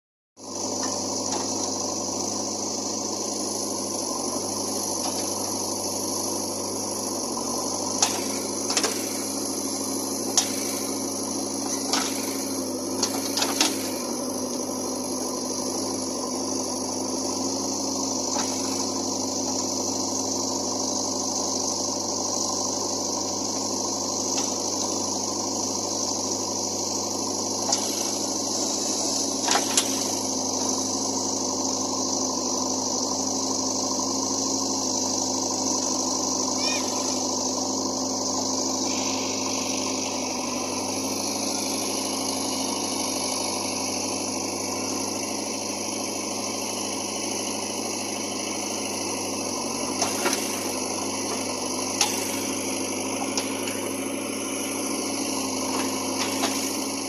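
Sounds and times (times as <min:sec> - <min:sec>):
diesel engine running: 0:00.4 - 0:57.0
high hiss: 0:36.6 - 0:45.5.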